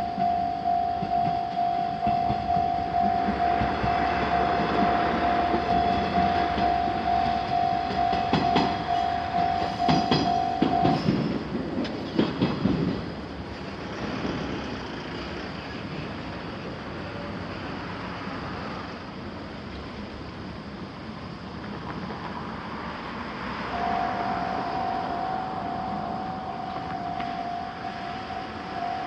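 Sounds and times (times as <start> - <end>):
level crossing alarm dinging: 0.0 - 11.4, 23.7 - 29.0
diesel train passing: 0.0 - 29.0
wheels clacking over rail joints: 1.0 - 13.1.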